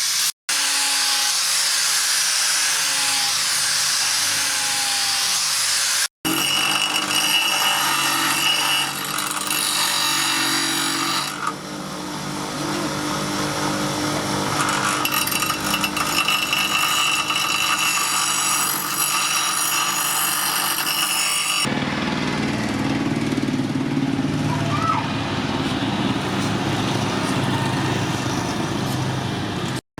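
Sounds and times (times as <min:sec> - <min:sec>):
power tool grinding steel: 0:00.0 - 0:21.8.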